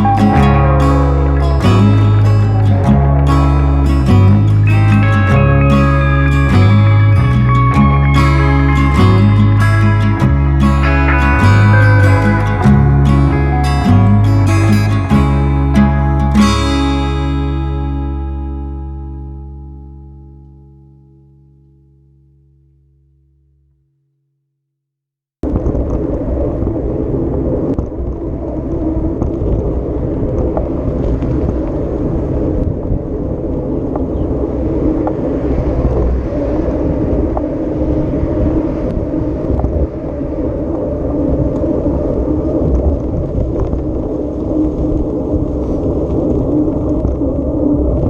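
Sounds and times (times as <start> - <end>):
engine rumbling: 0.0 - 23.9.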